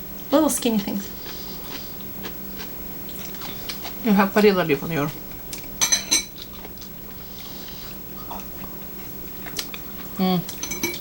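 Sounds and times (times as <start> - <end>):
quiet chewing: 0.8 - 4.0, 5.4 - 10.6.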